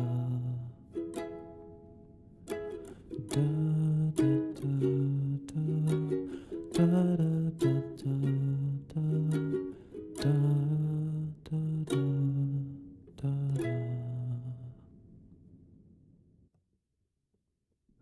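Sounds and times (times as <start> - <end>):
plucked acoustic string chords: 0.0 - 14.8.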